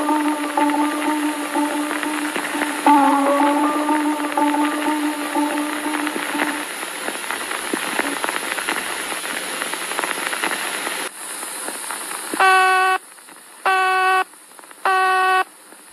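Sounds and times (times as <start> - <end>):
crackling static hiss: 0.0 - 15.9
buzzing alarm beeps: 12.4 - 13.0, 13.7 - 14.2, 14.8 - 15.4.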